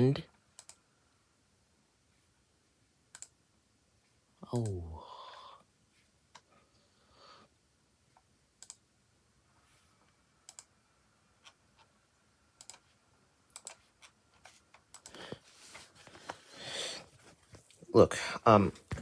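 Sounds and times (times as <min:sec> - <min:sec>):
faint computer mouse clicks: 0:00.6 - 0:00.8, 0:03.1 - 0:03.4, 0:08.2 - 0:08.8, 0:10.4 - 0:10.7, 0:12.6 - 0:12.9, 0:13.5 - 0:15.2.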